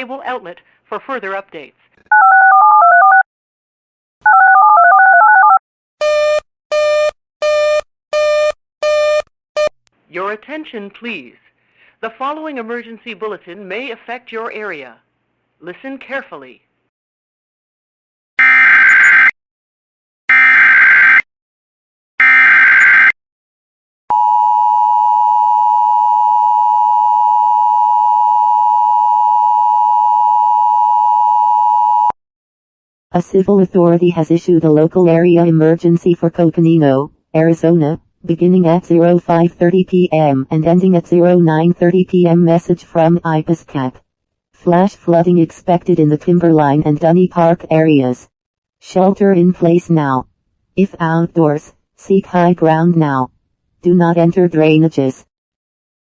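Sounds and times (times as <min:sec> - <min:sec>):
two-tone alarm: 0:05.4 - 0:09.7, 0:18.4 - 0:19.4, 0:20.3 - 0:21.3, 0:22.2 - 0:23.2, 0:24.1 - 0:32.2.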